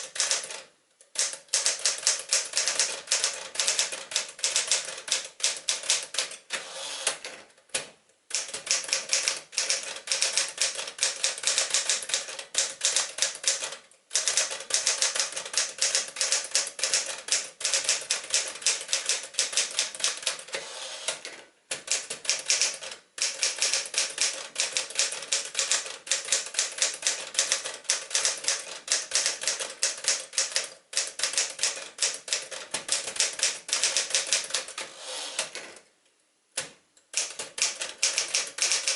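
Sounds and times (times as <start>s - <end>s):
typewriter key strikes: 37.2s - 38.9s.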